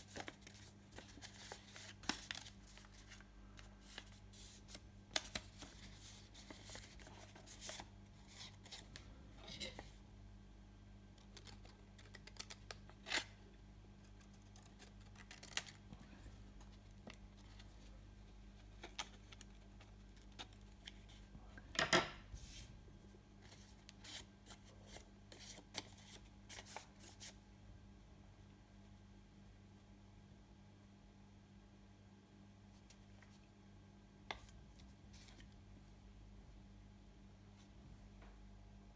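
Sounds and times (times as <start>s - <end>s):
paper crackling and rustling: 0.0s - 9.0s, 14.0s - 16.0s.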